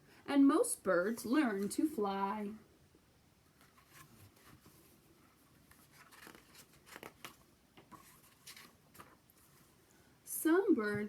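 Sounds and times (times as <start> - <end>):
paper rustling: 3.5 - 9.8.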